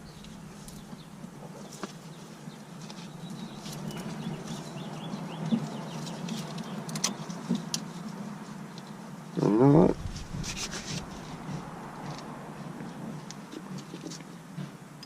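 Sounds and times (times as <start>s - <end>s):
low steady hum: 9.4s - 12.8s.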